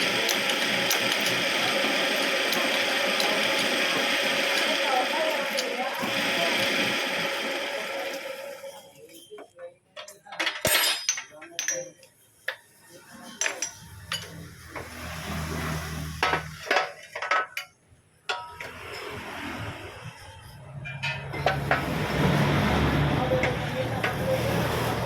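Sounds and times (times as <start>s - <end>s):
metal tools clinking: 8.8s - 12.5s, 13.2s - 14.4s.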